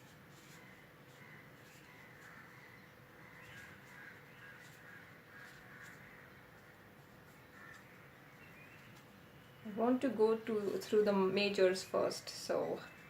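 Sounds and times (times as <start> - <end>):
faint crows cawing: 0.3 - 9.7.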